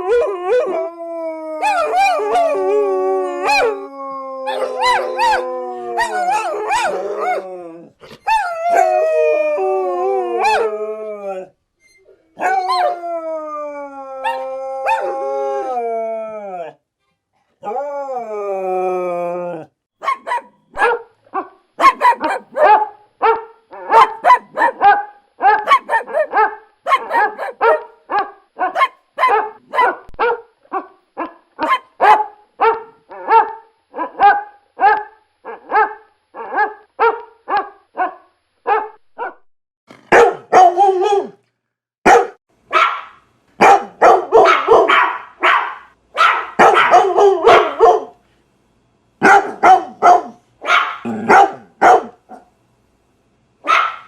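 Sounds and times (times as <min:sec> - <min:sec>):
dog barking: 0:20.0 - 0:39.5, 0:40.1 - 0:41.4, 0:42.0 - 0:48.2, 0:49.2 - 0:52.5, 0:53.6 - 0:54.0.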